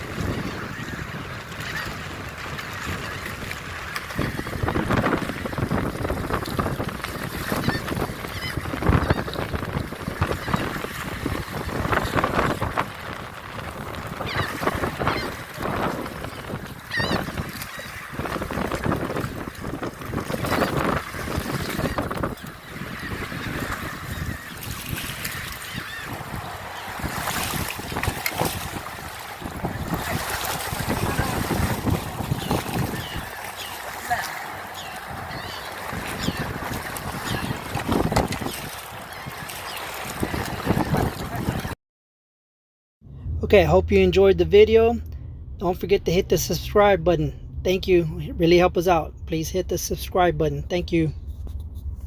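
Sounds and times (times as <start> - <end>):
surf washing: 0.0 - 41.8
wind buffeting microphone: 0.0 - 41.8
short bird calls: 16.3 - 18.1.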